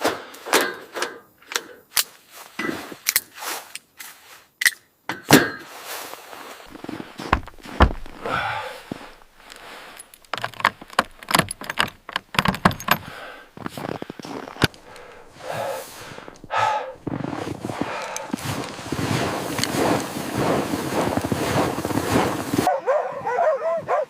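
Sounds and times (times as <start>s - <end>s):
sharp knocks and clicks: 10.1s - 13.3s
short breathy sounds: 13.0s - 17.0s.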